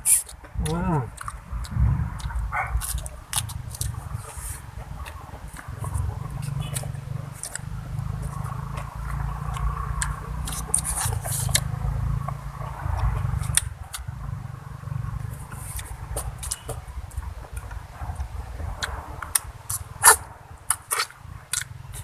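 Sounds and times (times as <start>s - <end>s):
wet mouth clicks: 0.0s - 11.7s, 15.5s - 16.7s
person chewing with crunches: 0.0s - 11.9s, 15.4s - 22.0s
steady low rumble: 0.0s - 22.0s.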